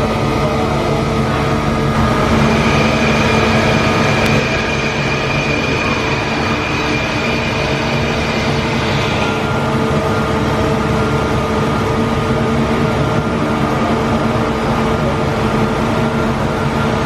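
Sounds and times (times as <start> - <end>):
machine hum: 0.7 - 13.9
whining tones: 1.9 - 10.4.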